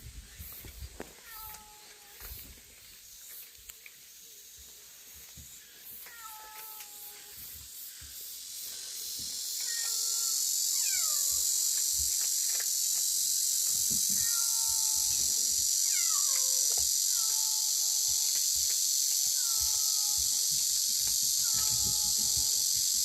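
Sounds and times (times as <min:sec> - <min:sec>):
high-pitched insect drone: 0:00.0 - 0:23.0
kitten mewing: 0:14.2 - 0:18.3, 0:19.2 - 0:20.5, 0:21.4 - 0:22.6.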